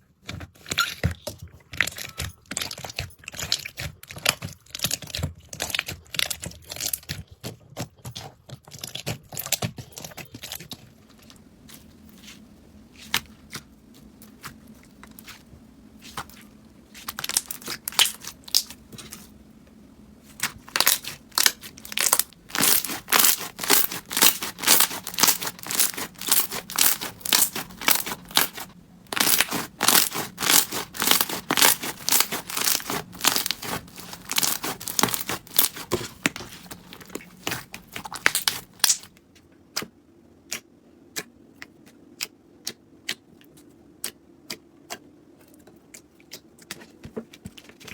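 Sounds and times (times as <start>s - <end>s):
slime crackling and popping: 16.0s - 19.4s, 20.2s - 39.1s.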